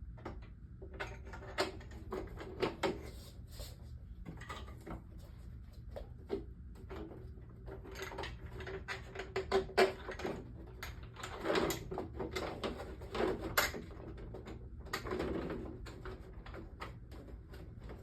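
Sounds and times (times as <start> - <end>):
clicks and clattering of metal parts: 6.8 - 17.0.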